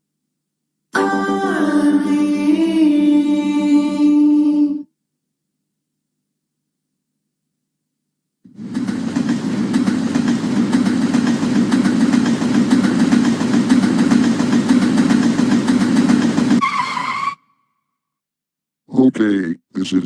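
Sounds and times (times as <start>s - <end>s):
underground train rumbling: 8.5s - 17.1s.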